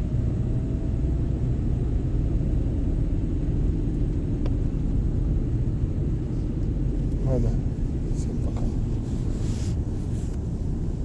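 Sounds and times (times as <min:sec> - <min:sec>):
car driving rumble inside cabin: 0:00.0 - 0:11.0.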